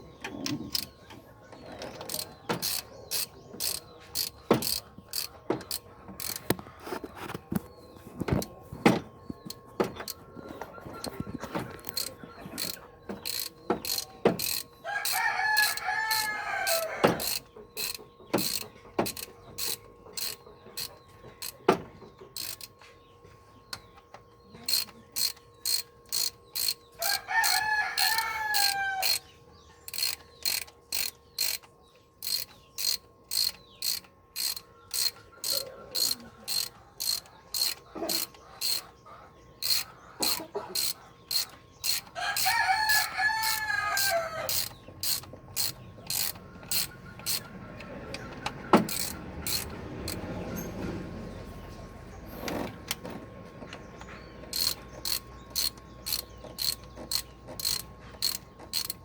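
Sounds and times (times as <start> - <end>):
ratchet wrench clicking: 0.4 - 1.0, 2.0 - 6.6, 11.8 - 21.7, 22.4 - 22.7, 24.7 - 29.3, 29.9 - 38.9, 39.6 - 50.7, 54.5 - 59.0
rooster crowing: 14.8 - 17.4, 27.0 - 29.3, 42.2 - 44.7.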